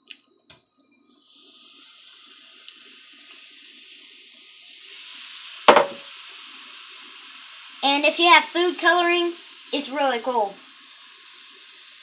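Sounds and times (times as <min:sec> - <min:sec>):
vinegar fizzing on baking soda: 0:01.0 - 0:12.0
sharp knock: 0:05.7 - 0:06.0.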